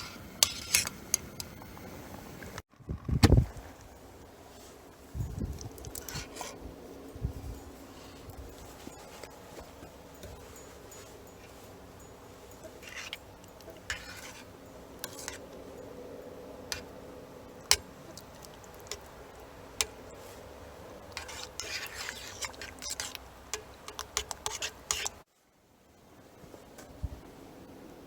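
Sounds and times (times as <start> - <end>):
spoon stirring and scraping pan: 0.0 - 1.7, 4.2 - 25.2
spoon clinking against pan: 8.8 - 16.0.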